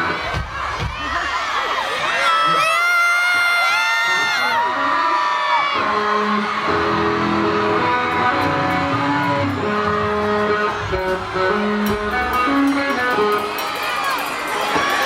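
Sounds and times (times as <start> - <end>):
live band playing: 4.6 - 15.0.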